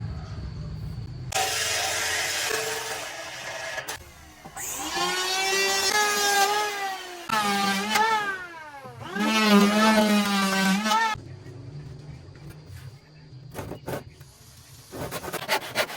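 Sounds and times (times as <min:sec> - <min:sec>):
woodworking power tool whine: 0:01.3 - 0:11.2.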